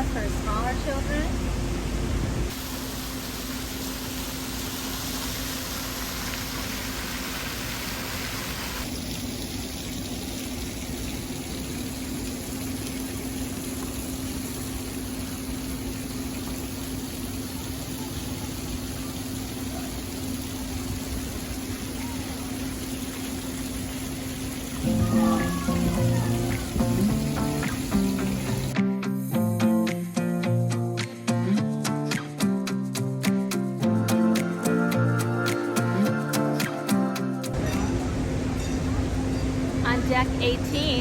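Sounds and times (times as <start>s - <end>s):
continuous hiss: 0.0s - 28.8s, 33.5s - 41.0s
low mechanical hum: 0.0s - 28.8s, 37.6s - 41.0s.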